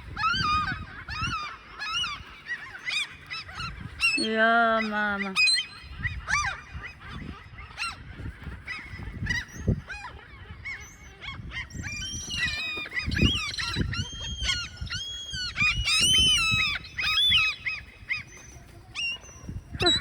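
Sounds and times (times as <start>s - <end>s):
gulls calling: 0.0s - 20.0s.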